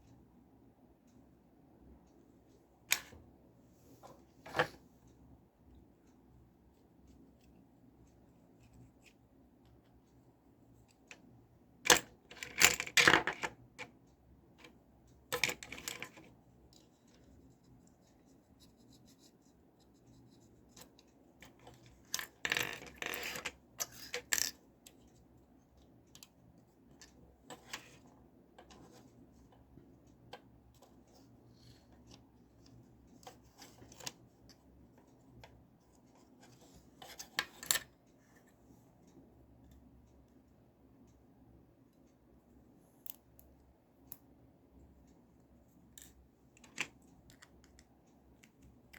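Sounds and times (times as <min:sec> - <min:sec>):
plastic toy parts clicking: 0:11.9 - 0:13.6, 0:15.3 - 0:16.3, 0:21.5 - 0:24.6.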